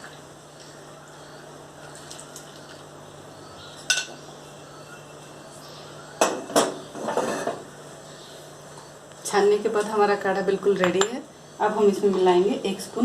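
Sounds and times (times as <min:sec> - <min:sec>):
kitchen utensils clinking: 0:06.2 - 0:07.6.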